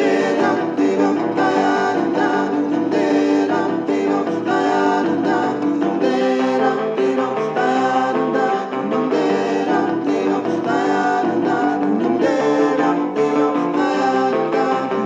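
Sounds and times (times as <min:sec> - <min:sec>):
song with singing and guitar: 0:00.0 - 0:15.0.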